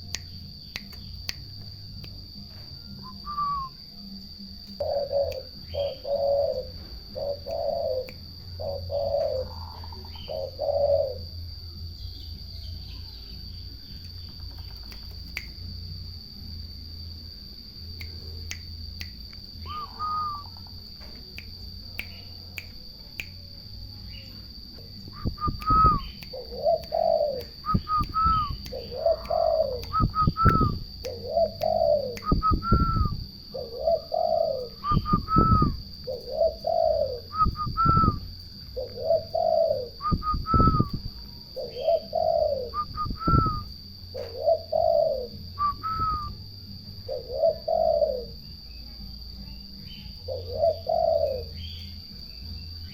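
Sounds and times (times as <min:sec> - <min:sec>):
turtle doves cooing: 0:04.8 - 0:11.4, 0:19.6 - 0:20.6, 0:25.1 - 0:40.9, 0:41.5 - 0:46.4, 0:47.0 - 0:48.4, 0:49.9 - 0:51.9.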